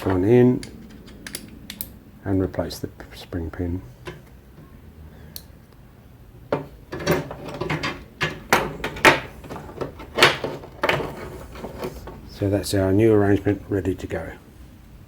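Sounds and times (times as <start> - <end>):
sharp metal knocks and clicks: 6.5 - 11.2.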